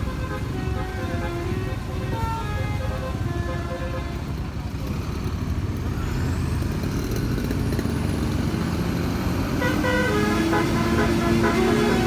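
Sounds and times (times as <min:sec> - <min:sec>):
multi-tone air horn tune: 0:00.0 - 0:04.3, 0:09.6 - 0:12.0
vehicle engine rumble: 0:00.0 - 0:12.0.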